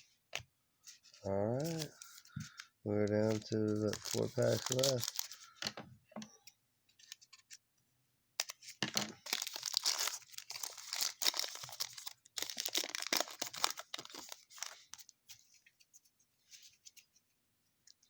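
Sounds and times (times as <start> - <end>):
wrapper tearing and crinkling: 1.6 - 2.2, 3.2 - 5.5, 8.4 - 15.0.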